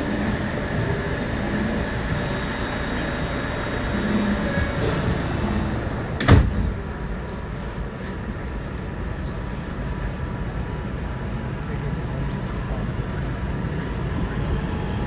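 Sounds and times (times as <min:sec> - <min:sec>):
subway car hum: 0:00.0 - 0:15.0
sliding doors closing thump: 0:01.7 - 0:06.9.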